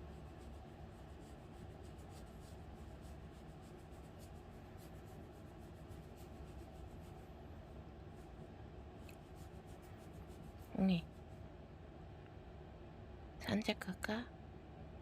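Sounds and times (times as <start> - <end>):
light clicks and scratching: 9.0 - 11.3.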